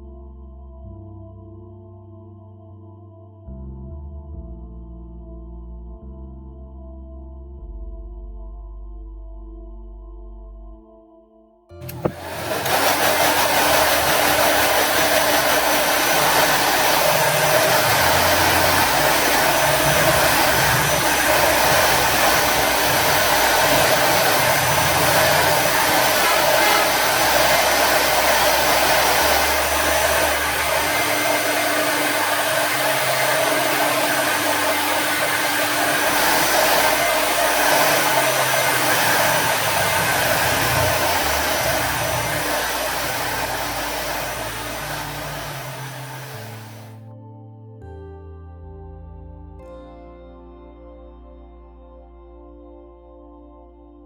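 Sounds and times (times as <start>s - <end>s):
hot air gun blowing: 11.8s - 46.9s.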